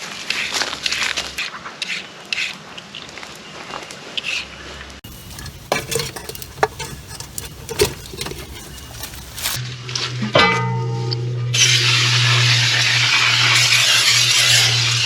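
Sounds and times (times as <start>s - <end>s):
metal utensils scraping pots: 5.0s - 9.6s.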